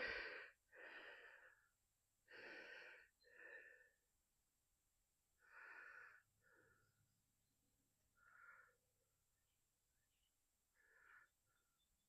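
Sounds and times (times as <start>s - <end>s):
person breathing faintly: 0.0s - 4.0s, 5.4s - 7.2s, 8.1s - 9.0s, 10.7s - 11.9s.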